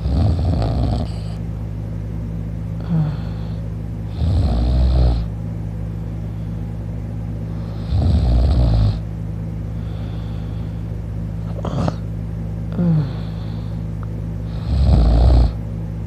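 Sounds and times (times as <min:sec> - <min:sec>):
man snoring: 0:00.0 - 0:01.4, 0:02.8 - 0:05.3, 0:07.6 - 0:09.0, 0:11.4 - 0:12.0, 0:12.7 - 0:13.8, 0:14.4 - 0:15.6
steady low hum: 0:00.0 - 0:16.0
breath sounds: 0:09.7 - 0:12.0, 0:12.7 - 0:14.7.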